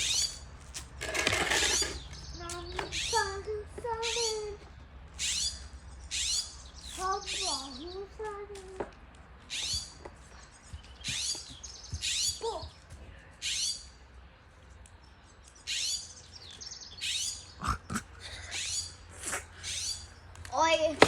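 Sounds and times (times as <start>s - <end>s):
blue jay calling: 0.0s - 0.5s, 1.5s - 8.2s, 9.4s - 12.8s, 13.4s - 14.0s, 15.4s - 20.8s.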